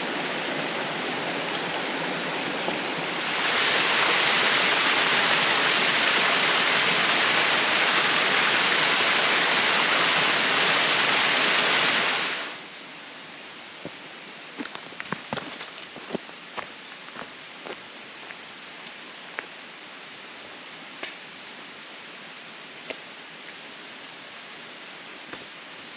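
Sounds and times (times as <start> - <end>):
waterfall rushing: 0.0 - 12.6.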